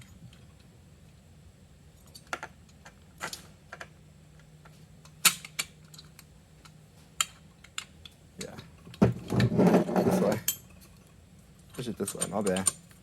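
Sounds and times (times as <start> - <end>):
metal parts clicking and clinking: 11.7 - 13.0.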